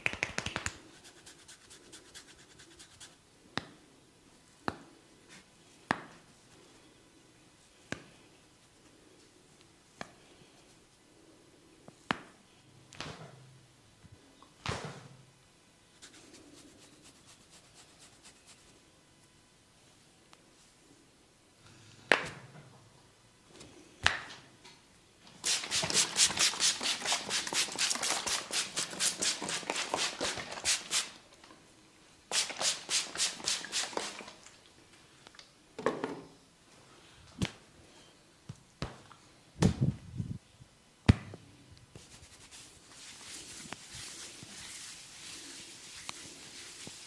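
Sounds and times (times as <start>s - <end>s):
fingers scratching through hair: 0.0s - 3.2s, 42.0s - 47.0s.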